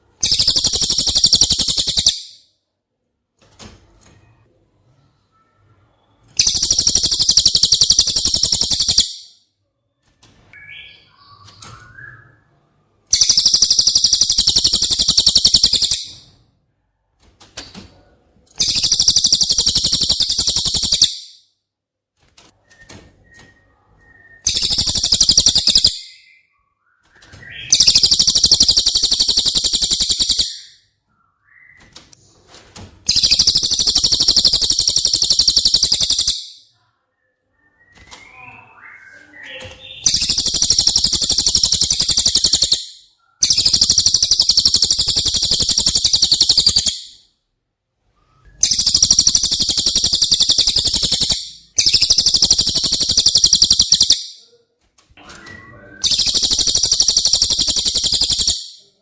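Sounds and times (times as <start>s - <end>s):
songbird high-pitched trills: 0.2s - 2.4s, 5.4s - 9.4s, 13.1s - 16.3s, 18.6s - 21.4s, 24.1s - 26.6s, 27.6s - 30.8s, 33.1s - 36.7s, 37.6s - 47.2s, 48.5s - 54.4s, 56.0s - 59.0s.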